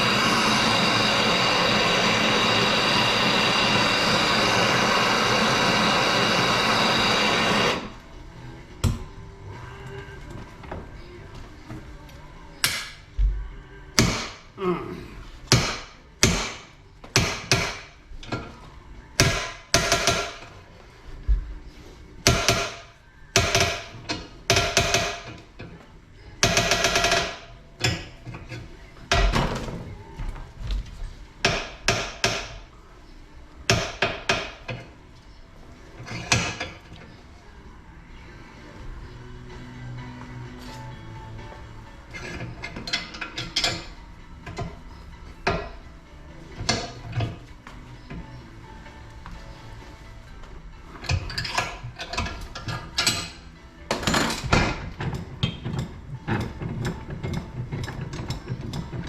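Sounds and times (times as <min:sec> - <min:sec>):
loud steady hiss: 0:00.0 - 0:08.0.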